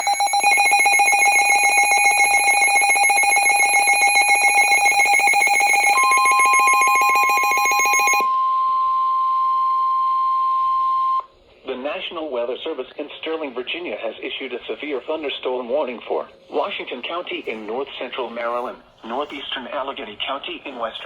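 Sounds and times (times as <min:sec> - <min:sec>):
pulsing electronic alert tone: 0:00.0 - 0:08.2
steady single-pitch alarm tone: 0:00.0 - 0:11.3.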